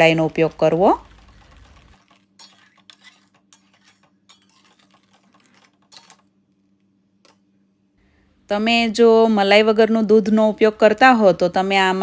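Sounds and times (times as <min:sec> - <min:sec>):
spoon scraping pan: 0:01.9 - 0:06.2.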